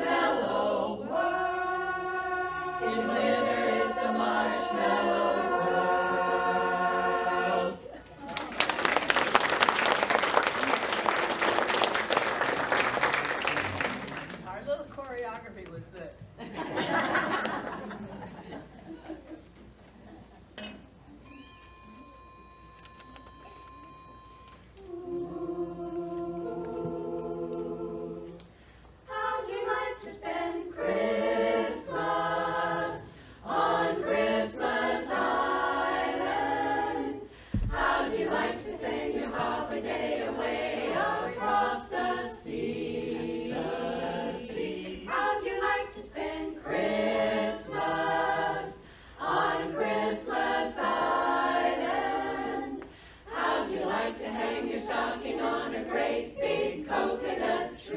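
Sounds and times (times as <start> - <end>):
women's chorus singing a cappella: 0.0 - 8.3, 16.5 - 19.3, 24.8 - 57.9.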